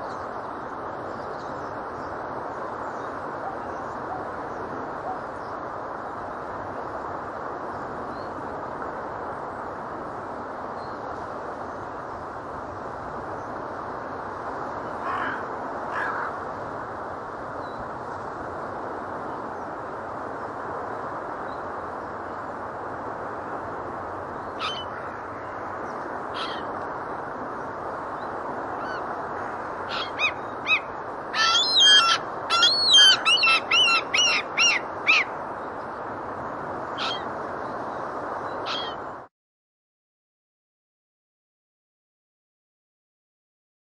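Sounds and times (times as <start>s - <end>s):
seagulls calling: 15.0s - 16.4s, 24.6s - 25.2s, 26.3s - 26.7s, 28.8s - 29.1s, 29.8s - 35.4s, 37.0s - 37.3s, 38.6s - 39.0s
geese calling: 26.4s - 26.7s, 29.9s - 35.3s.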